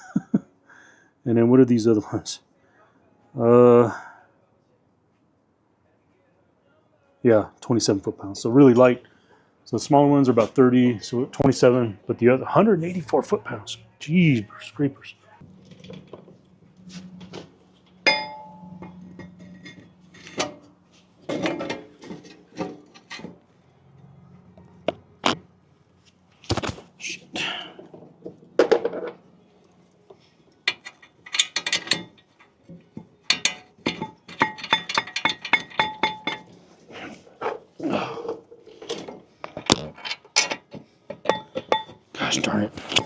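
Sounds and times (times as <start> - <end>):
metal tools clinking: 16.9 - 23.3, 30.5 - 36.7, 38.8 - 42.0.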